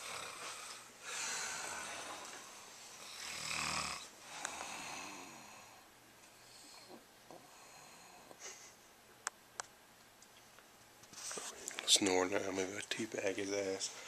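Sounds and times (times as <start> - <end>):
man snoring: 0.0 - 5.8.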